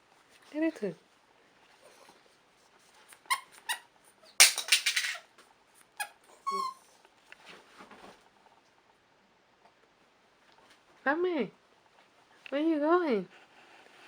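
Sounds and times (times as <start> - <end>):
dog toy squeaking: 3.3 - 3.8, 6.0 - 6.8.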